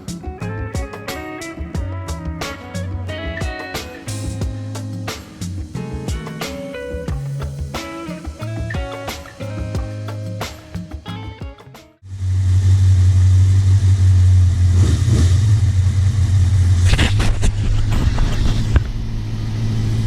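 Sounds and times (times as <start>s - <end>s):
music: 0.0s - 12.0s.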